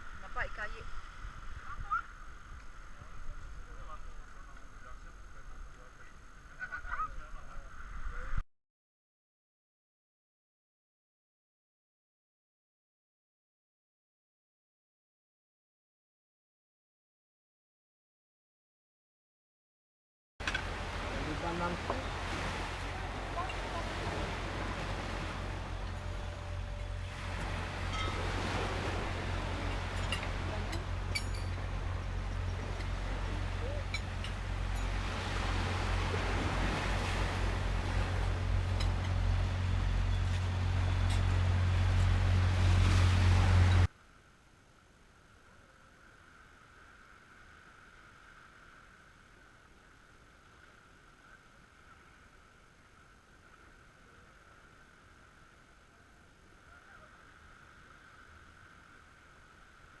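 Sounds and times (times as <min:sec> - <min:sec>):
engine droning: 0:20.4 - 0:43.9.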